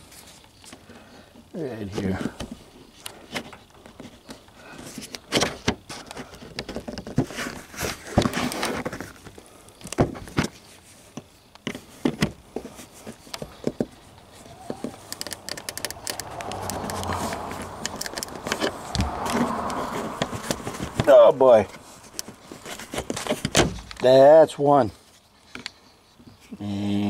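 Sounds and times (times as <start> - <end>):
hand tool clicking on metal: 15.0 - 17.2.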